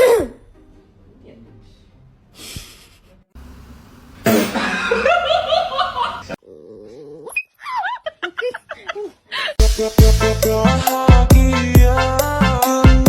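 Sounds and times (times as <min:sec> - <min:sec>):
person laughing: 0:04.3 - 0:06.4, 0:07.6 - 0:09.6.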